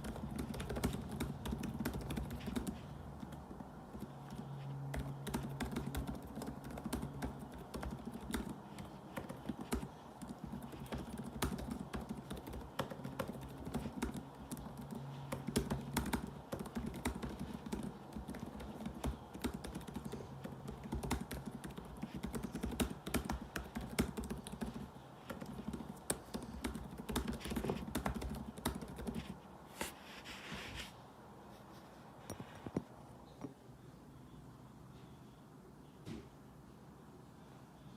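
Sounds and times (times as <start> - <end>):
laptop keyboard typing: 0.0 - 29.4.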